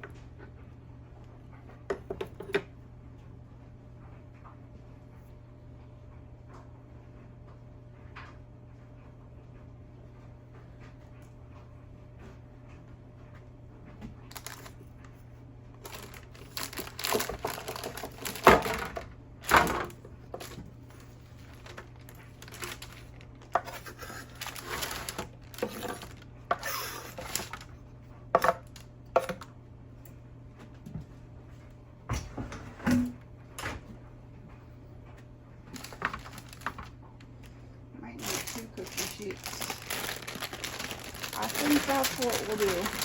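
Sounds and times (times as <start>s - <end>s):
rustling: 15.8s - 18.8s, 20.4s - 27.7s, 35.8s - 36.9s, 38.2s - 43.0s.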